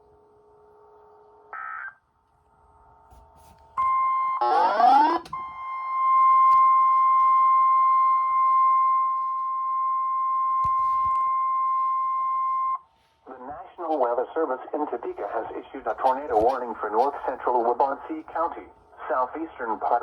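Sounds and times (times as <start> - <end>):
shrill steady alarm tone: 3.8 - 12.9.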